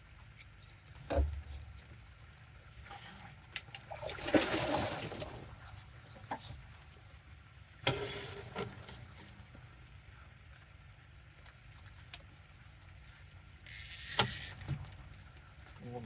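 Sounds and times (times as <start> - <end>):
water splashing: 3.9 - 5.6.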